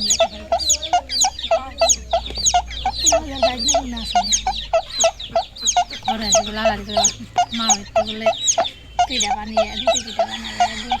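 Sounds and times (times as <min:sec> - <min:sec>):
chickens clucking: 0:00.0 - 0:11.0
chicks peeping: 0:00.0 - 0:11.0.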